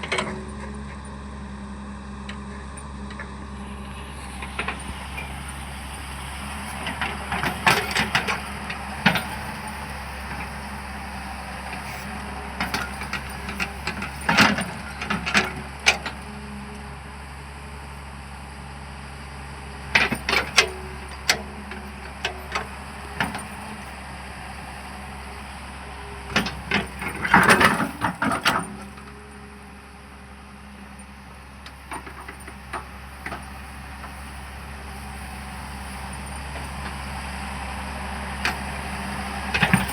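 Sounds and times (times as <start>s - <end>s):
excavator diesel engine running: 0.0s - 39.9s
machine clanking and rattling: 4.4s - 5.4s, 6.1s - 16.3s, 19.9s - 29.2s, 31.1s - 34.4s, 38.4s - 39.9s.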